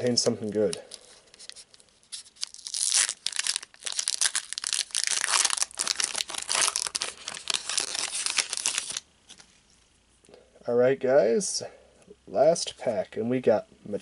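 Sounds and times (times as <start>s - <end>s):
foil wrapper tearing and crinkling: 0.6s - 9.0s.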